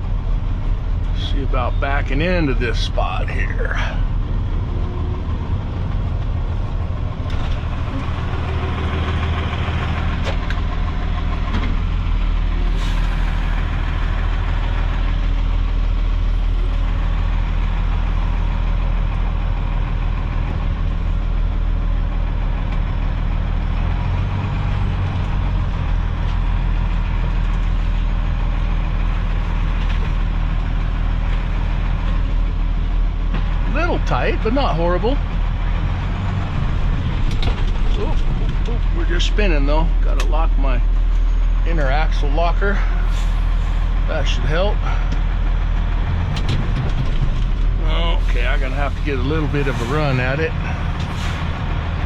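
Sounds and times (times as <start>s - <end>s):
diesel truck engine running: 0.0s - 52.0s.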